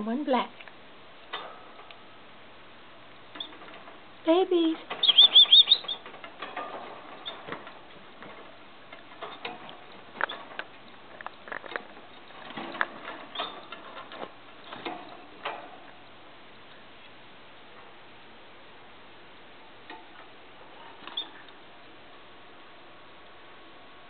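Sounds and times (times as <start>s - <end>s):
faint clicks and rustles: 0.5s - 18.3s
nestlings begging peeps: 5.0s - 6.1s.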